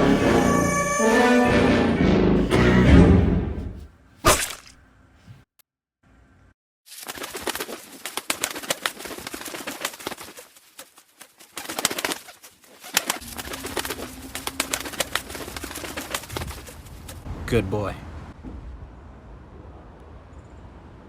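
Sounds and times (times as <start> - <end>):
rustles and clicks: 6.9 - 17.3.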